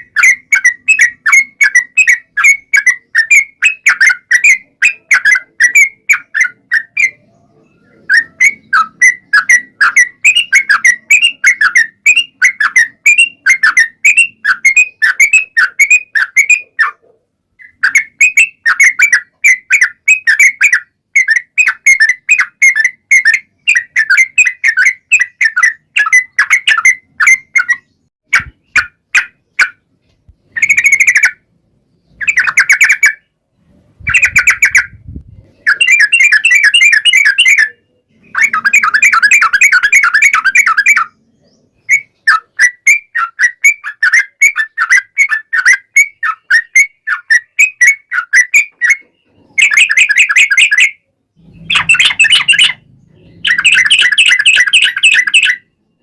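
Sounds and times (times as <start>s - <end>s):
bulbul singing bubbly chirps: 30.4s - 33.4s, 34.0s - 56.0s.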